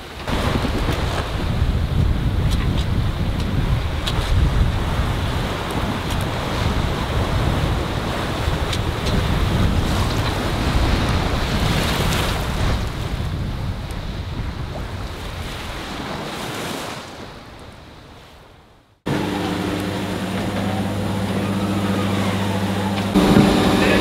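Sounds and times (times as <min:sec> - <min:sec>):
wind buffeting microphone: 0:00.0 - 0:16.3
waves rushing along a hull: 0:00.0 - 0:24.0
low hum of watermaker: 0:19.1 - 0:24.0.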